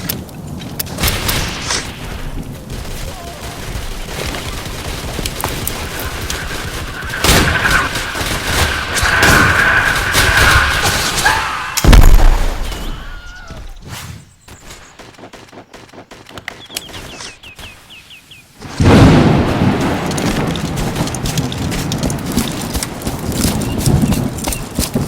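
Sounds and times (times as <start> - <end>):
rapid gunshots: 1.0 - 12.6, 18.9 - 25.0
loud deep boom: 11.8 - 12.9.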